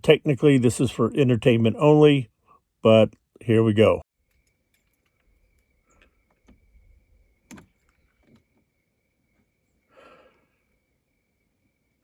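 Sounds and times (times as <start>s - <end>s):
faint handling knocks and clicks: 4.2s - 8.7s.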